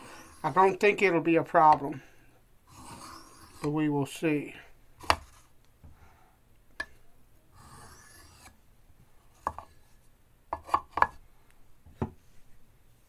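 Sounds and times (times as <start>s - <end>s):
knife scraping on a whetstone: 0.0s - 0.7s, 2.7s - 3.8s, 7.6s - 8.6s.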